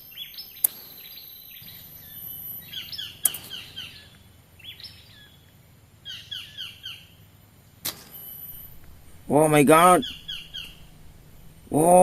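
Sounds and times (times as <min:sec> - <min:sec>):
bird chirping: 0:00.0 - 0:12.0
sharp clicks: 0:00.6 - 0:00.8
faint high whine: 0:08.0 - 0:12.0.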